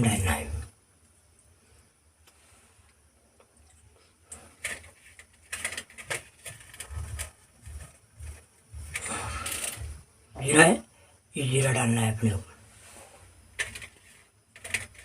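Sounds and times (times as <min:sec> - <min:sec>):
spice rustling: 0:04.4 - 0:10.0, 0:12.8 - 0:15.0.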